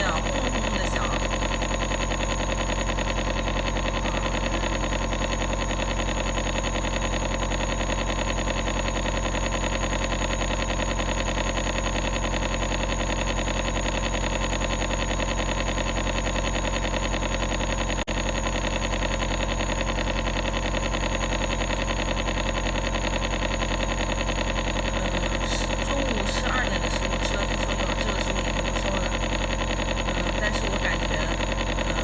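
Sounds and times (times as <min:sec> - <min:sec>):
nebulizer mechanical hum: 0:00.0 - 0:32.0.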